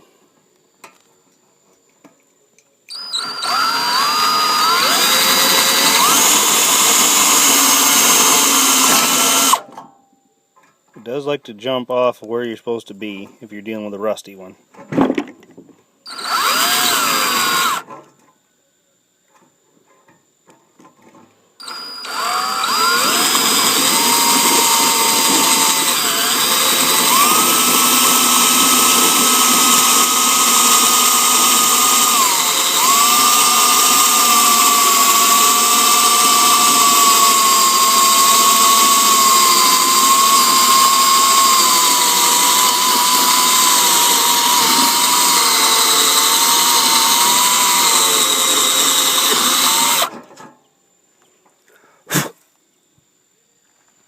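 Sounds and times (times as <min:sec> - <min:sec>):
electric drill whining: 0:02.9 - 0:09.6, 0:16.1 - 0:17.9, 0:21.6 - 0:50.1.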